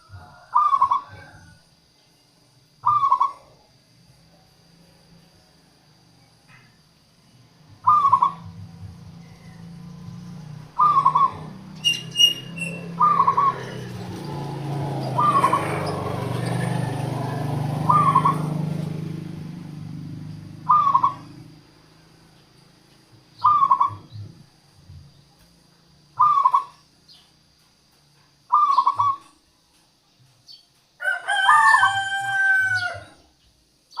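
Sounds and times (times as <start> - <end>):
dove cooing: 0.0 - 1.6, 2.8 - 3.5, 7.7 - 9.6, 10.4 - 17.1, 17.7 - 19.7, 20.4 - 21.6, 23.4 - 24.4, 26.2 - 26.8, 28.5 - 29.3
bird chirp: 0.0 - 3.7, 6.1 - 30.8, 32.7 - 34.0.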